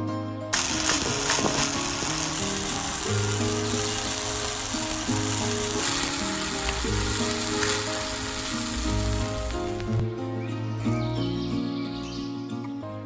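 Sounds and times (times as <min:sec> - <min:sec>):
background music with held notes: 0:00.0 - 0:13.0
steady hiss: 0:00.6 - 0:10.1.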